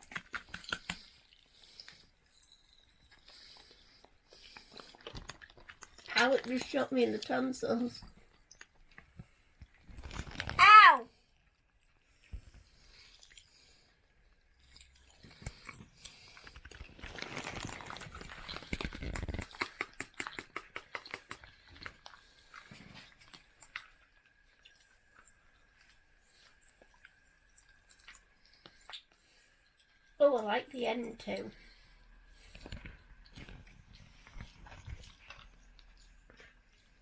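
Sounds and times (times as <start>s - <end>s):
popping candy crackling in mouth: 0.0s - 10.8s, 14.6s - 29.3s.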